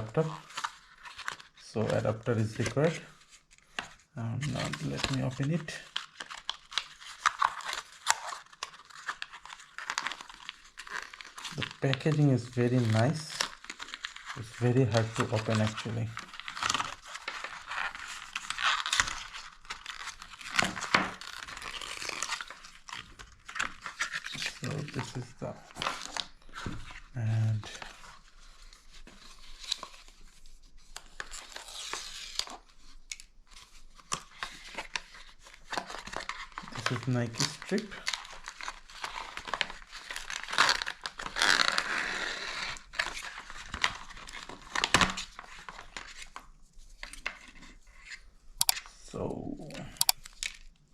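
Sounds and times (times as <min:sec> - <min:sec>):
packaging tearing and crinkling: 0:00.0 - 0:03.6, 0:04.4 - 0:30.2, 0:30.9 - 0:47.3, 0:49.6 - 0:50.9
sharp paper rips: 0:04.4 - 0:25.2, 0:34.0 - 0:46.4.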